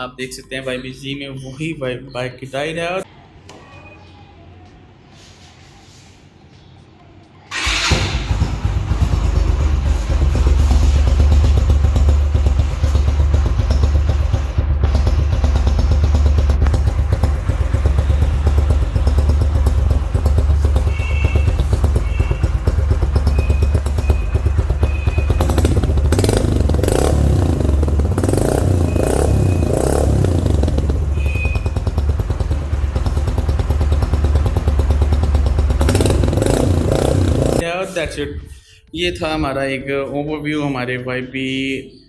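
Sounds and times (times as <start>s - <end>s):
motorcycle engine idling: 7.6s - 37.6s.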